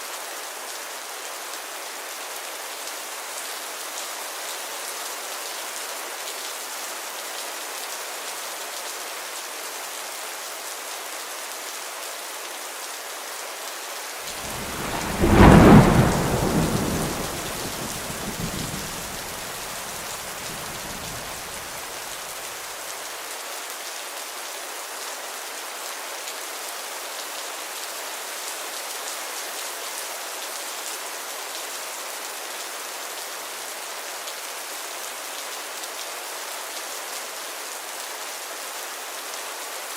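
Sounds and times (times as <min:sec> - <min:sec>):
heavy rain falling: 0:14.2 - 0:23.2
thunder rumbling: 0:14.3 - 0:22.0.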